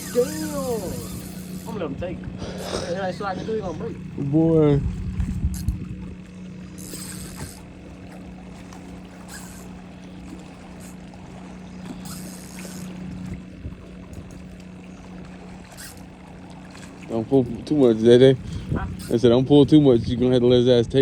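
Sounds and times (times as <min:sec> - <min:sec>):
low motor hum: 0:00.0 - 0:21.0
hissing swishes: 0:06.8 - 0:07.6.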